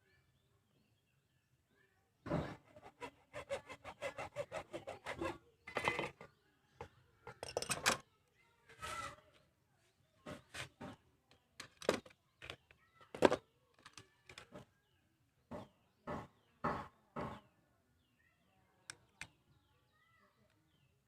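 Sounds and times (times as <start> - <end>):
irregular knocks and taps: 15.5 - 17.4.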